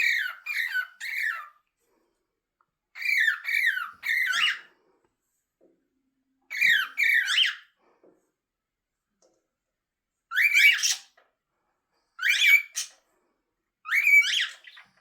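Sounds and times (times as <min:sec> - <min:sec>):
parrot calling: 0:00.0 - 0:01.6, 0:02.9 - 0:04.7, 0:06.5 - 0:07.7, 0:10.3 - 0:11.2, 0:12.2 - 0:13.0, 0:13.8 - 0:14.9.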